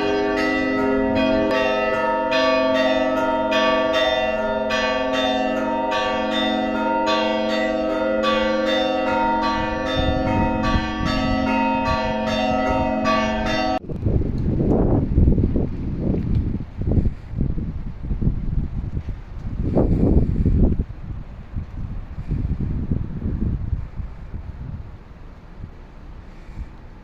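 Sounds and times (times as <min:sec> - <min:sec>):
church bells ringing: 0:00.0 - 0:13.8
wind buffeting microphone: 0:00.0 - 0:27.0.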